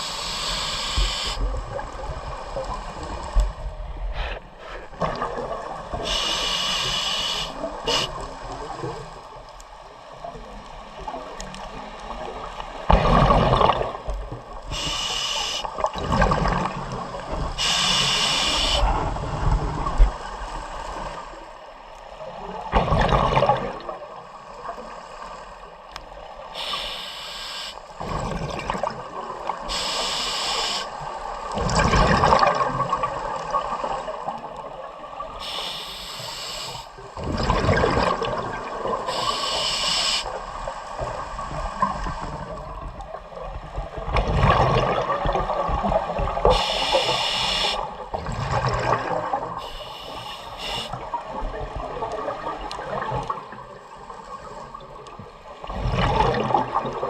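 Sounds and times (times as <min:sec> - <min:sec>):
hissing regulator inhale: 0:00.0 - 0:01.4, 0:06.0 - 0:08.2, 0:14.7 - 0:15.7, 0:17.6 - 0:19.0, 0:26.6 - 0:27.8, 0:29.7 - 0:31.0, 0:35.4 - 0:37.0, 0:39.1 - 0:40.4, 0:46.5 - 0:47.9, 0:49.6 - 0:51.1
gurgling exhaled bubbles: 0:04.1 - 0:06.4, 0:12.9 - 0:15.1, 0:15.8 - 0:17.8, 0:22.7 - 0:24.0, 0:28.0 - 0:29.7, 0:31.6 - 0:34.2, 0:37.2 - 0:39.6, 0:43.4 - 0:47.2, 0:47.8 - 0:49.6, 0:55.5 - 0:57.0.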